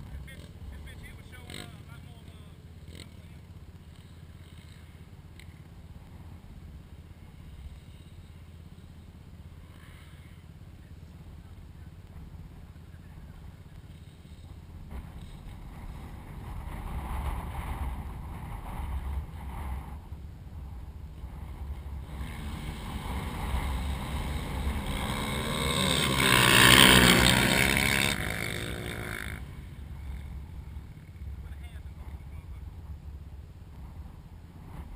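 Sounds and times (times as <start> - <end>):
atv engine at full throttle: 0.0 - 34.9.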